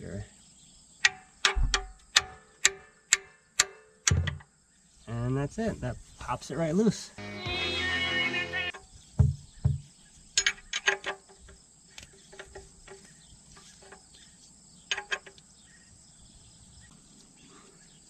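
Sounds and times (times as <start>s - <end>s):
crickets chirring: 0.0s - 18.0s
dull thumps: 1.1s - 2.4s, 4.1s - 4.4s, 9.1s - 11.6s
metal tools clinking: 10.4s - 11.3s.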